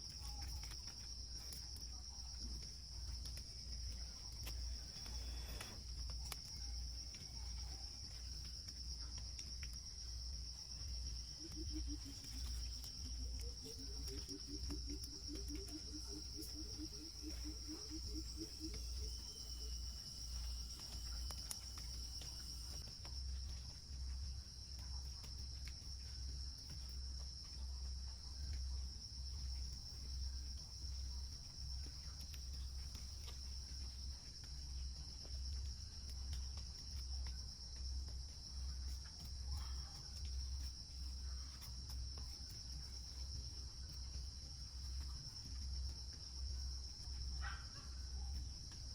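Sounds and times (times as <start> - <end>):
insects droning: 0.0 - 48.9
low rhythmic pulsing: 1.2 - 39.6.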